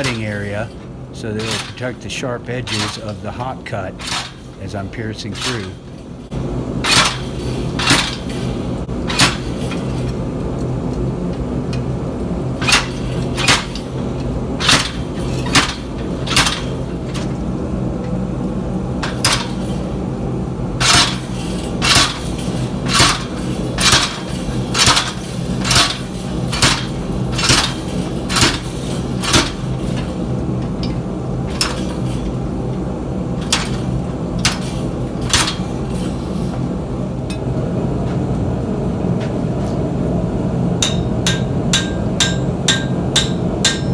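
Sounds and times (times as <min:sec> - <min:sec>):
steady low hum: 0:00.0 - 0:43.9
hammer striking chisel on metal: 0:40.8 - 0:43.9.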